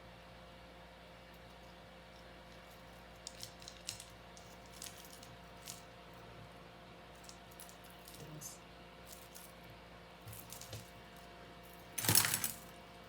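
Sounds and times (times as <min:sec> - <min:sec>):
bag rustling: 0:10.3 - 0:12.8.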